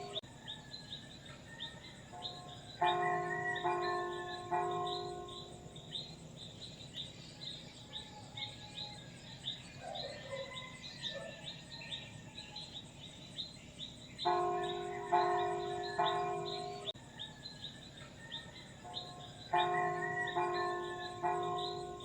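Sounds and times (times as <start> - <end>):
church bell ringing: 0.0 - 0.2, 2.2 - 6.1, 14.2 - 17.0, 18.8 - 22.0
birds chirping: 0.0 - 22.0.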